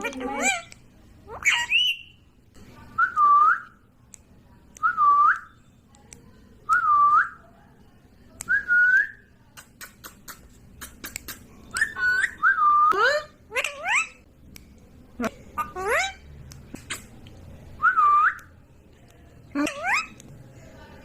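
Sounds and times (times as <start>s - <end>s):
sharp clicks: 9.6s - 12.0s.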